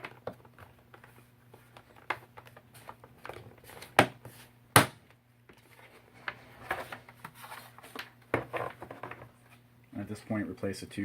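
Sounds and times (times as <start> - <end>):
plastic cover clicks and rustles: 0.0 - 4.0.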